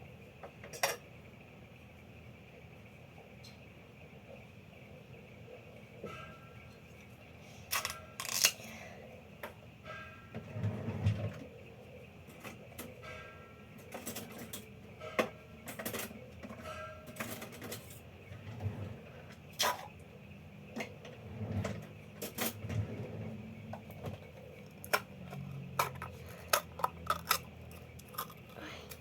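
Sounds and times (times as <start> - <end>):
small objects clicking and tapping: 7.7 - 8.6, 24.1 - 29.0.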